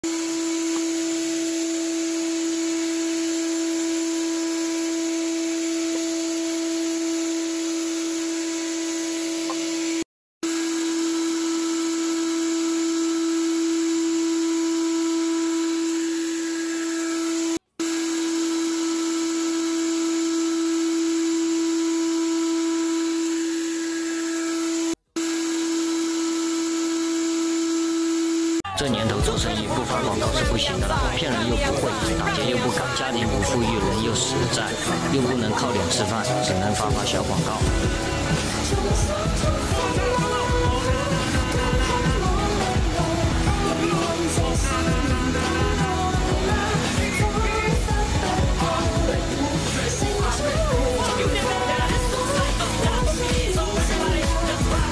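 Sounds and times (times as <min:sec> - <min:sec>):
hiss of wood cutting: 0:00.0 - 0:54.9
lathe motor whine: 0:00.0 - 0:54.9.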